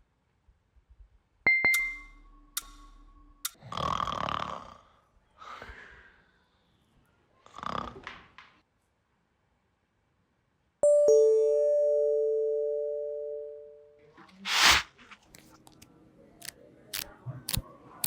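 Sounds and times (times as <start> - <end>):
two-tone ding-dong chime: 1.5 - 3.4, 10.8 - 13.9
short rushing noise: 14.5 - 15.1.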